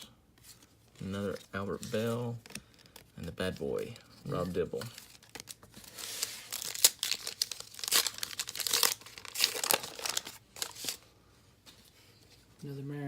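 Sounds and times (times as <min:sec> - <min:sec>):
cards handled: 0:00.3 - 0:11.1
card pack wrapper crinkling and tearing: 0:01.0 - 0:11.1.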